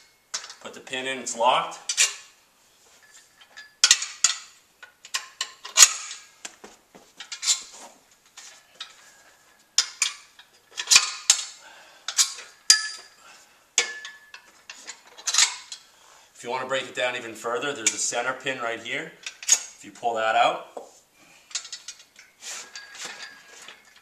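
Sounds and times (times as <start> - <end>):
metal clanks and clinks: 0.0 - 0.7, 2.9 - 6.4, 8.6 - 13.2, 13.8 - 15.9, 19.2 - 19.8, 21.5 - 24.0.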